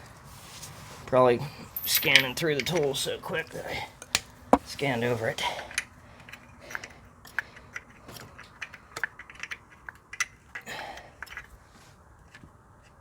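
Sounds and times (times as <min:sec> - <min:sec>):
metal hand tools clinking: 0:01.8 - 0:03.1.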